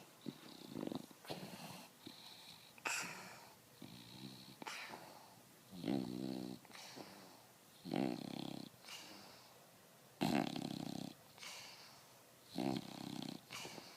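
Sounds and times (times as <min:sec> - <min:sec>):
puppy snoring: 0:00.0 - 0:09.5, 0:10.2 - 0:13.9
soft hissing breath: 0:06.6 - 0:07.8, 0:08.7 - 0:09.8, 0:11.3 - 0:12.8, 0:13.4 - 0:13.9.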